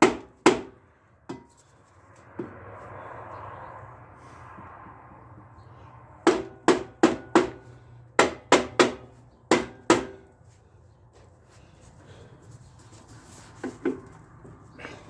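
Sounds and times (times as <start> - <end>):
hammer striking metal: 6.2 - 7.6, 8.2 - 10.3.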